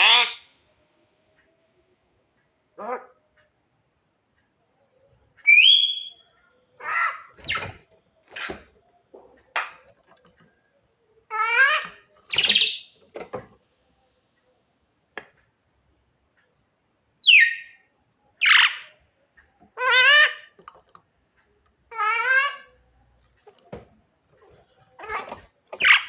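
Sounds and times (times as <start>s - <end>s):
bird calling: 5.4s - 10.3s, 11.2s - 13.2s, 17.2s - 19.0s, 24.4s - 26.0s.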